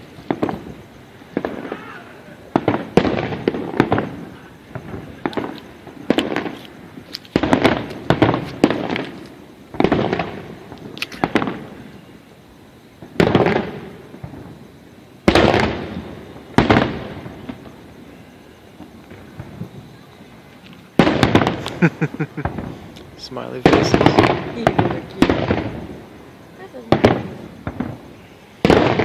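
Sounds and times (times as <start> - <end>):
fireworks bursting: 0.0 - 29.0.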